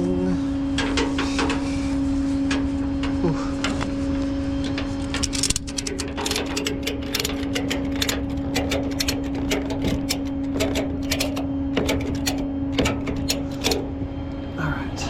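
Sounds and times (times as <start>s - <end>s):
steady low hum: 0.0s - 15.0s
ratchet clicking: 4.6s - 13.9s.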